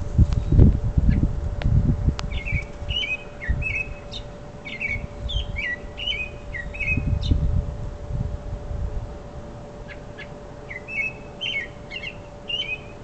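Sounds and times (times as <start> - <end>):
low rumbling on microphone: 0.0 - 9.8
songbird chirping: 2.2 - 7.4, 9.8 - 13.0.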